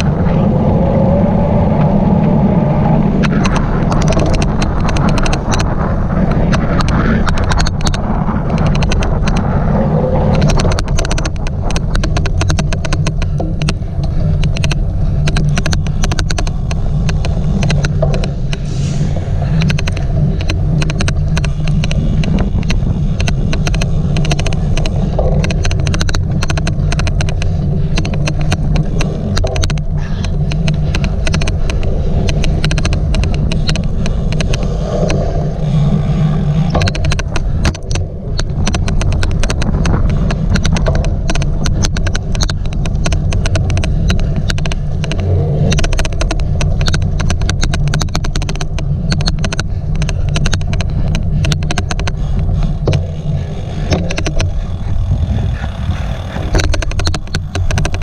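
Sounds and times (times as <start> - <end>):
low riding rumble: 0.0 - 58.0
rapid irregular bike clicking: 0.0 - 58.0.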